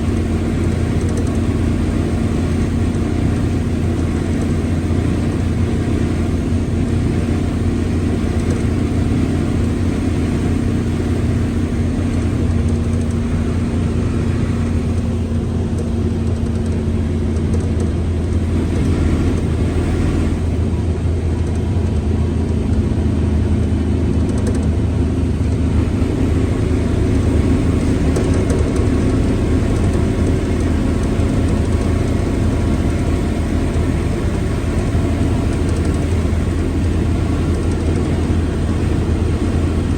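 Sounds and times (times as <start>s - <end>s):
bus engine drone: 0.0s - 39.9s.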